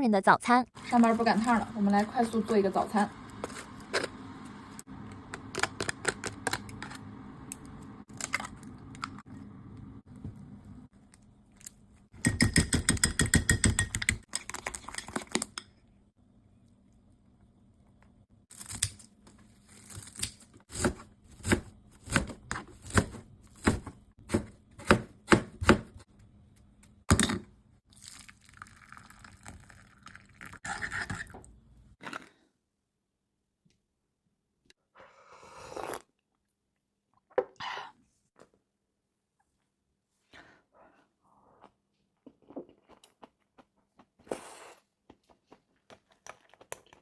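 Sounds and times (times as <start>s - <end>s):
knife chopping on cutting board: 20.7s - 26.0s.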